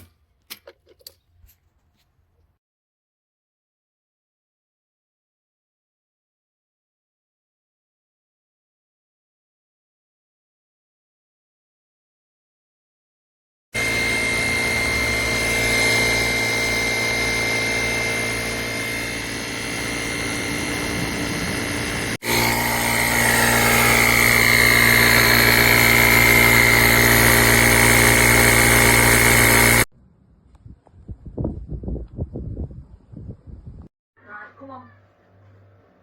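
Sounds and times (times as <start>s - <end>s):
small air compressor whining: 13.8s - 29.9s.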